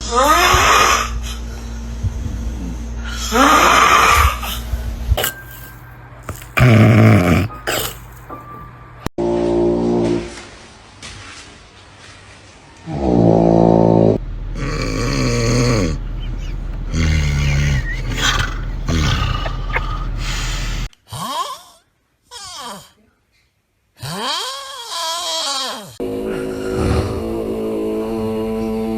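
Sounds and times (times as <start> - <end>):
low hum: 0.0 - 10.9, 12.8 - 20.9, 26.0 - 28.9
loud snores sweeping upward: 6.3 - 8.0, 12.9 - 20.9, 26.0 - 28.9.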